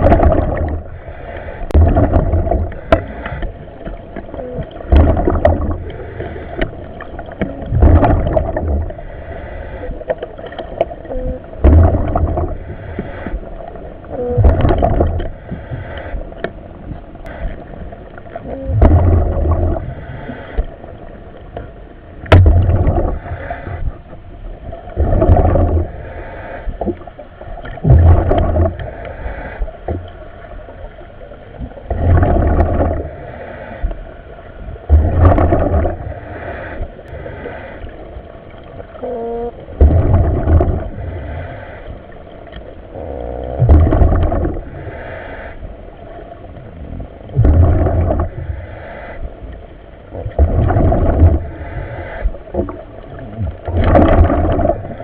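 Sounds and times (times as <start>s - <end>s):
diver breathing in helmet: 0.6s - 1.8s, 5.6s - 7.0s, 8.6s - 10.2s, 12.3s - 13.8s, 15.2s - 16.5s, 19.7s - 20.8s, 23.1s - 24.1s, 25.8s - 27.0s, 28.4s - 30.1s, 32.9s - 34.4s, 35.9s - 38.2s, 40.8s - 42.4s, 44.5s - 45.8s, 48.2s - 49.5s, 51.3s - 52.5s.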